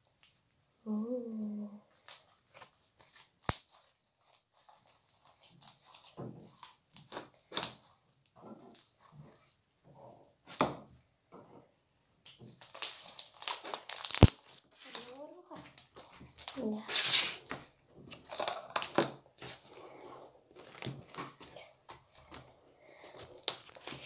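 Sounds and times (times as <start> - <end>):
slime squelching in hands: 1.8 - 9.6, 12.2 - 24.0.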